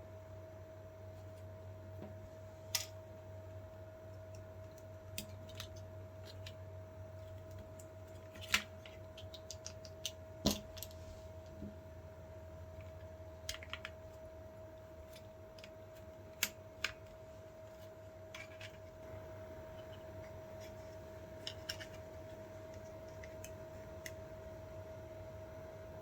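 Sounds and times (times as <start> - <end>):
faint steady hum: 0.0 - 26.0
small tools clicking and tapping: 7.2 - 11.0, 19.7 - 24.2.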